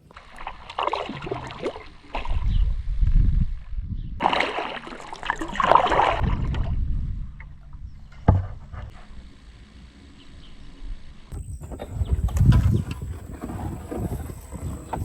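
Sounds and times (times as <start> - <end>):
paddle splashing through water: 0.0 - 3.0, 4.2 - 6.8.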